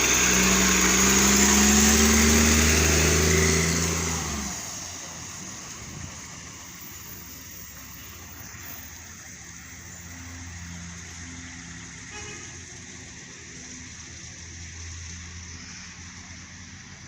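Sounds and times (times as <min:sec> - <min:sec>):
hiss: 0:00.0 - 0:11.0, 0:13.3 - 0:17.0
fire engine running: 0:00.0 - 0:17.0.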